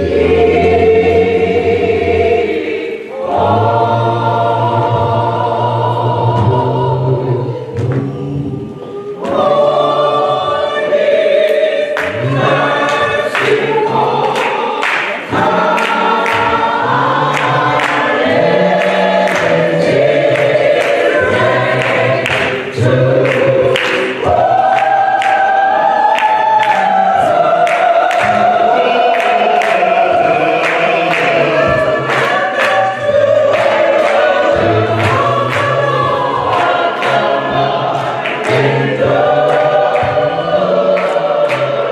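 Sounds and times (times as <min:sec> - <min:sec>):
gospel choir singing: 0:00.0 - 0:41.9
steady percussive beat: 0:12.0 - 0:41.9.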